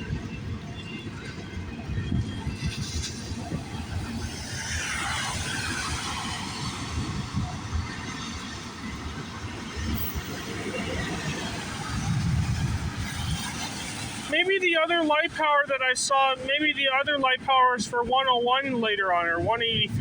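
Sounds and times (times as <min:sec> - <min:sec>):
tyres hissing on wet road: 0:02.6 - 0:14.4.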